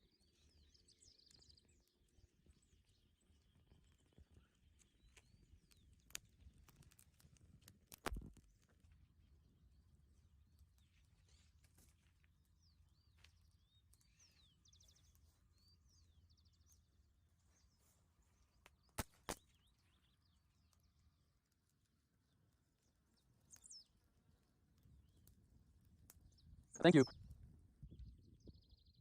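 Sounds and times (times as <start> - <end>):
birds chirping and trilling: 12.5 - 20.6.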